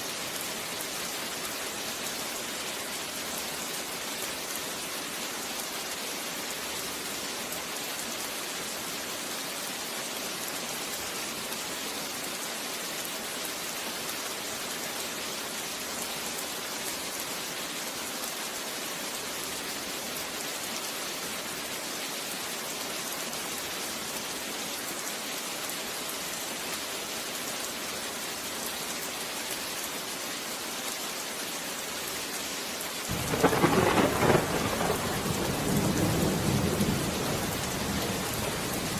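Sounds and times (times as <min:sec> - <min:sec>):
steady rain hiss: 0:00.0 - 0:38.9
thunderclap: 0:33.1 - 0:38.9.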